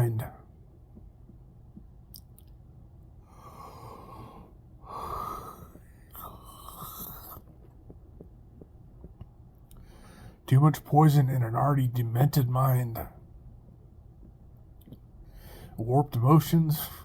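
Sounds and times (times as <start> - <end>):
man breathing heavily: 3.2 - 7.7, 9.7 - 10.5, 15.2 - 15.8.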